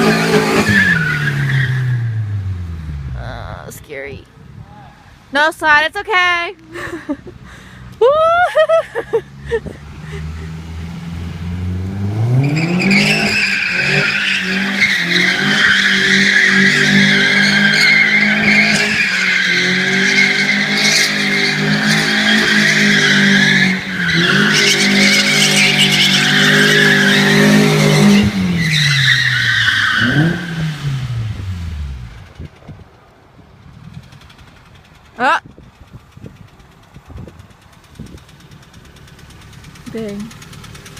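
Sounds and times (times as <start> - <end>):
car engine revving high: 9.1 - 32.2
tyres squealing: 12.4 - 30.5.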